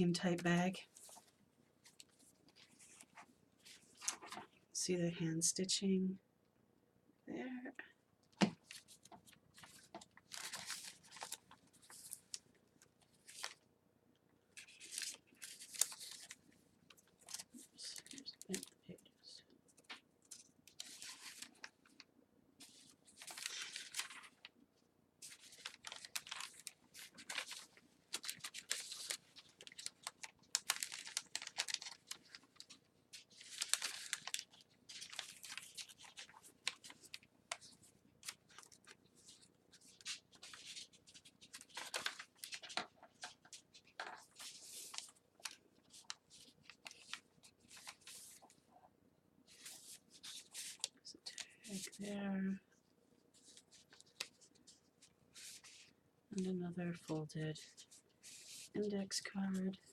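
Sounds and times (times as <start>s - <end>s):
paper rustling and crinkling: 0.8s - 4.6s, 8.4s - 13.7s, 14.5s - 18.8s, 19.7s - 24.6s, 25.2s - 48.8s, 49.5s - 52.1s, 53.2s - 55.9s, 57.0s - 59.9s.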